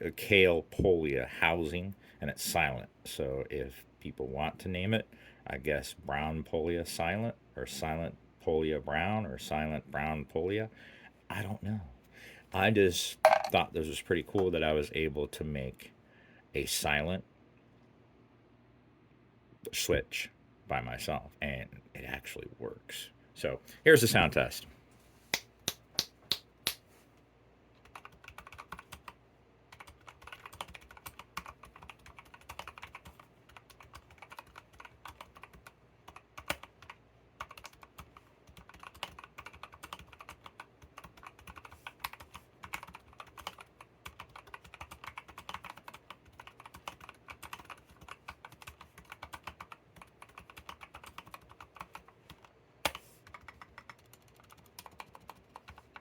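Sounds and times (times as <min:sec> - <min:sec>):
mechanical keyboard typing: 0:27.8 - 0:56.0.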